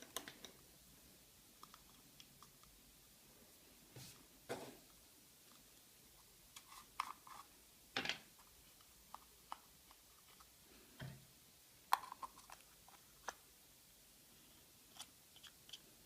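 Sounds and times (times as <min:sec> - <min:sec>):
small plastic parts clicking: 0:00.0 - 0:00.6.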